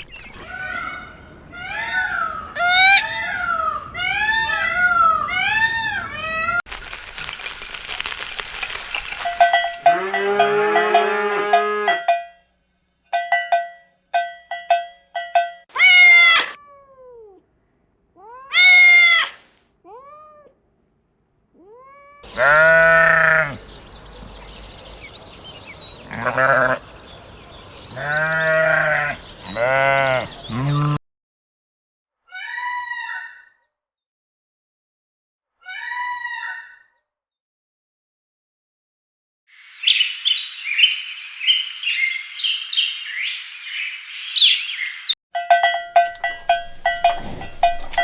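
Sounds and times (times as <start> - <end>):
farm animal bleating: 1.6 - 3.4, 18.2 - 19.4, 21.6 - 23.6, 26.0 - 26.9, 27.9 - 31.0
cat meowing: 2.6 - 3.2, 15.8 - 17.4, 18.2 - 20.6, 21.6 - 23.6.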